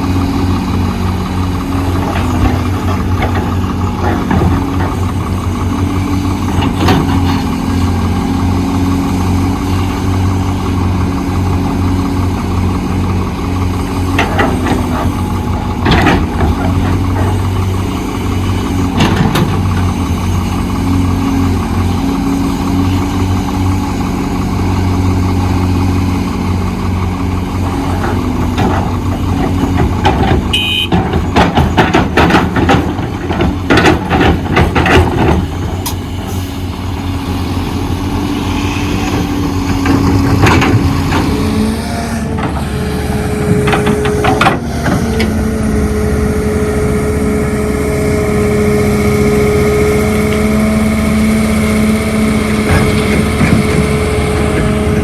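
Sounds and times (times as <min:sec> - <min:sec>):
excavator diesel engine running: 0:00.0 - 0:55.0
loud knocks and clatter: 0:01.2 - 0:08.4, 0:12.0 - 0:20.5, 0:27.2 - 0:36.1, 0:39.0 - 0:41.6, 0:43.4 - 0:45.3, 0:52.4 - 0:55.0.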